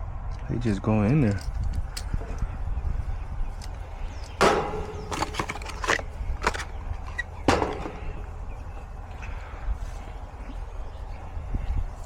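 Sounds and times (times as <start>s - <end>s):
steady low rumble: 0.0s - 12.0s
hand tools and metal parts clicking: 3.6s - 8.2s.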